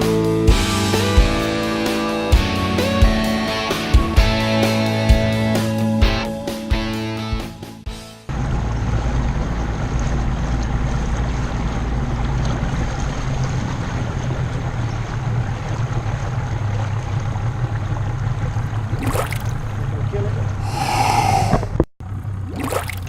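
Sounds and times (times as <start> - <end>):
outboard motor running: 8.3 - 20.6
water rushing: 18.6 - 19.8, 20.6 - 21.8
wind on microphone: 20.6 - 21.9.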